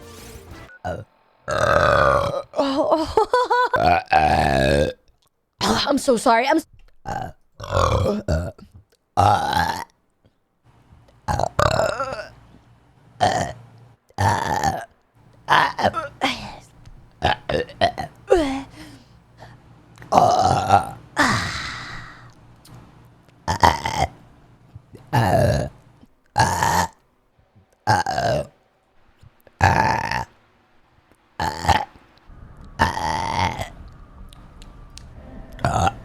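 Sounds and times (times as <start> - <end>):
person burping: 0.8 - 5.0, 7.1 - 9.9, 11.3 - 12.4, 13.2 - 13.6, 14.2 - 14.9, 15.5 - 19.5, 20.1 - 22.8, 23.5 - 24.2, 24.9 - 25.8, 26.4 - 27.0, 27.8 - 28.5, 29.6 - 30.3, 31.4 - 32.0.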